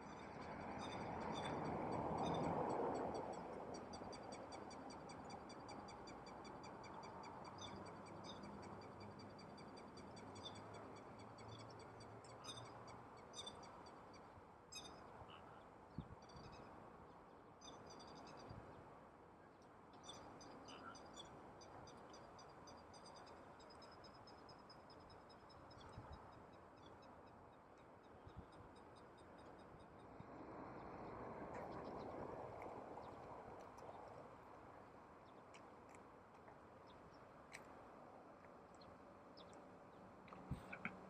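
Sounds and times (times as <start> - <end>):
frogs croaking: 0.0 - 15.6, 20.0 - 37.3.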